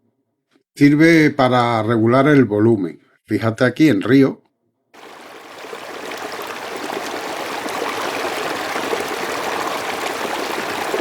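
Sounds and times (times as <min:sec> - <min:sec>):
rushing trickling stream: 0:05.0 - 0:11.0.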